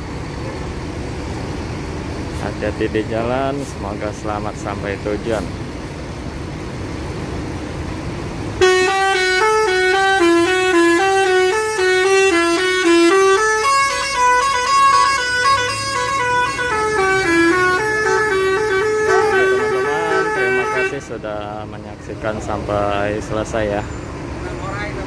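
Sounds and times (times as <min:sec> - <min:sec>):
vehicle noise: 0:00.0 - 0:25.0
musical bus horn melody: 0:08.5 - 0:21.2.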